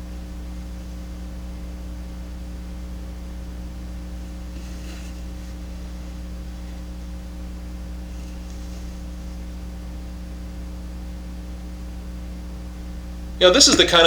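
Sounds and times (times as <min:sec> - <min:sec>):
electrical mains hum: 0:00.0 - 0:14.0
faint rustle: 0:04.2 - 0:07.2, 0:07.8 - 0:09.6.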